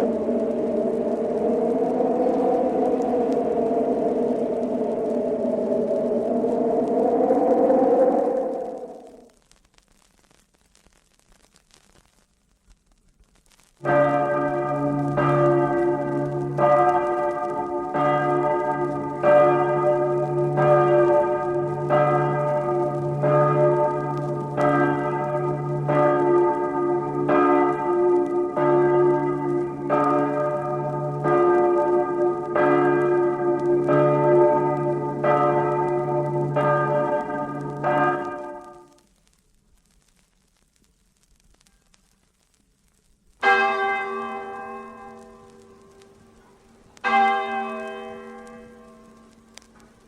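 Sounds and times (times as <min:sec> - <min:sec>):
church bells ringing a peal: 0:13.8 - 0:38.8, 0:43.4 - 0:45.8, 0:47.0 - 0:49.3.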